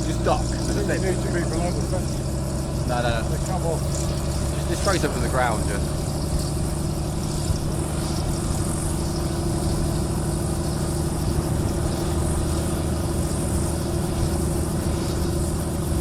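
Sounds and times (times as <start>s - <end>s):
aircraft engine idling: 0.0s - 16.0s.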